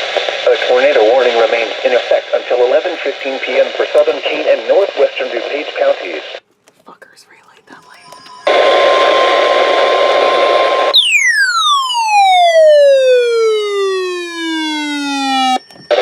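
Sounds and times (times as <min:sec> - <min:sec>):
loud radio static: 0:00.0 - 0:06.4
siren-like descending tone: 0:08.0 - 0:16.0.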